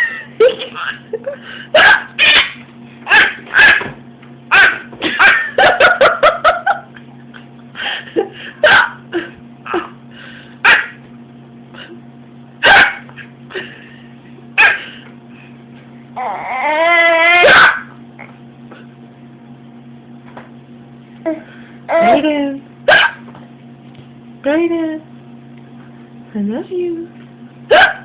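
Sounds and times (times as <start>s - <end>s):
laughter: 0.0s - 1.5s, 5.0s - 9.3s
imitated hiccups: 1.8s - 3.9s, 10.6s - 11.0s, 12.6s - 13.1s, 14.6s - 14.9s, 16.2s - 18.4s, 22.9s - 23.3s, 27.7s - 28.0s.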